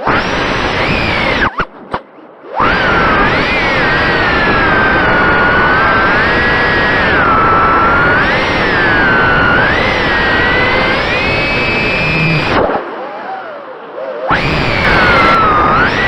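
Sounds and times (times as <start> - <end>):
quadcopter motors whining: 0.0 - 1.6, 2.5 - 13.6, 14.2 - 16.0.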